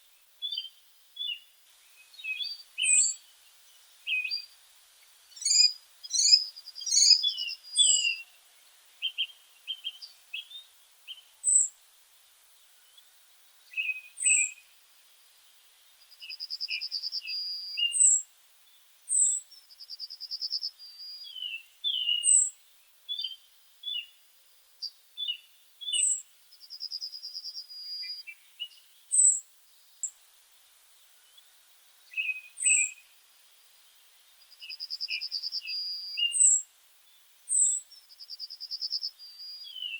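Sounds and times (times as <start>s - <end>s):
short bird chirps: 5.3s - 8.3s, 24.8s - 30.1s, 34.6s - 36.6s, 37.5s - 39.9s
rapid bird trills: 5.4s - 8.2s.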